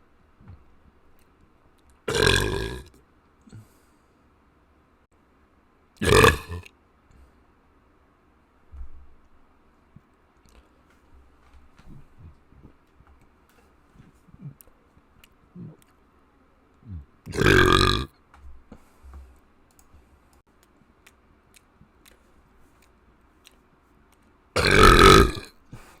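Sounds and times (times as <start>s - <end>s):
person burping loudly: 2.1s - 2.9s, 6.0s - 6.7s, 16.9s - 18.1s, 24.6s - 25.6s
faint clicks: 19.7s - 22.2s.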